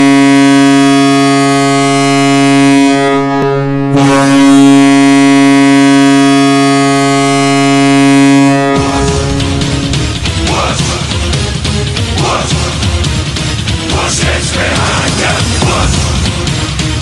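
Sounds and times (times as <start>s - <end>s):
goal horn blasts: 0.0s - 10.6s.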